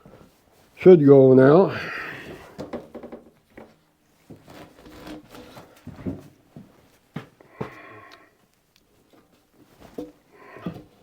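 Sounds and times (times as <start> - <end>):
knocks and bumps on wall: 2.6 - 3.7.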